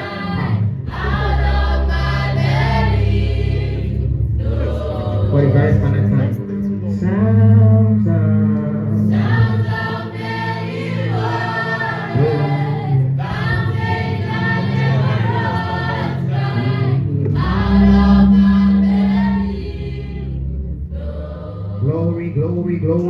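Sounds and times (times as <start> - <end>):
gospel choir singing: 0.0 - 23.0
instrumental backing: 0.0 - 23.0
low bass notes: 0.0 - 23.0.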